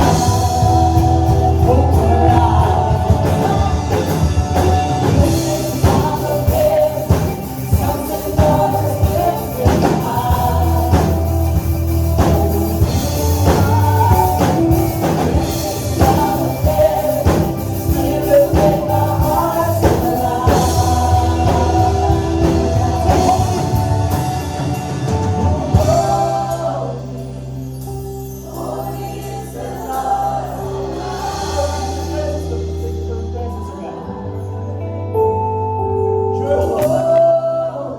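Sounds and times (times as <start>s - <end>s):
drums playing: 0.0s - 27.0s
singers holding notes: 0.0s - 37.9s
worship band playing: 0.0s - 37.9s.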